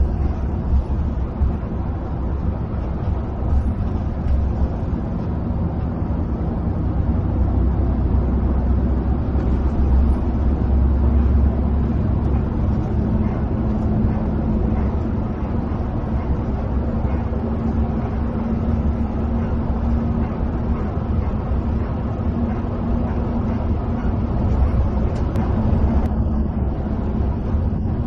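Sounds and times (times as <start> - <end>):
engine and tyre roar: 0.0 - 28.0.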